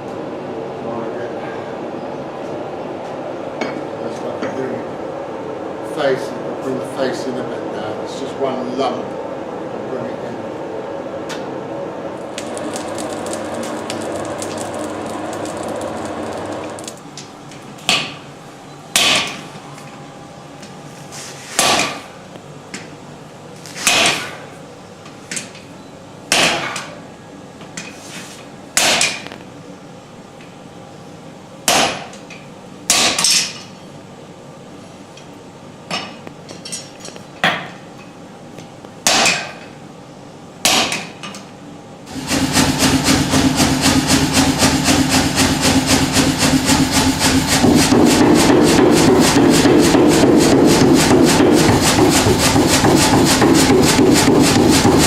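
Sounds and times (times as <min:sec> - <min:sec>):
machine pounding: 0:12.2 - 0:17.0, 0:42.1 - 0:55.0
hammer striking steel on anvil: 0:19.0 - 0:19.4, 0:39.0 - 0:39.6.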